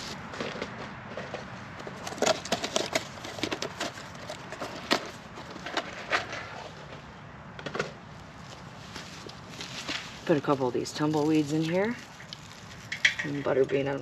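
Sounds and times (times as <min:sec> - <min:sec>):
firewood knocking and clattering: 0:12.9 - 0:13.7.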